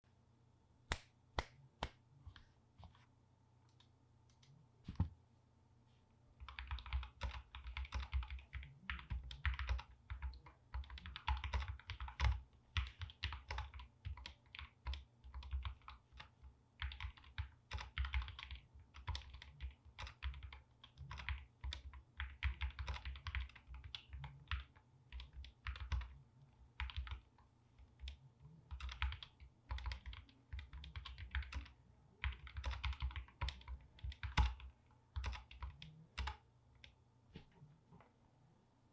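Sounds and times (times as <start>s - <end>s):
mechanical keyboard typing: 6.4s - 26.1s, 26.8s - 27.3s, 28.0s - 36.4s.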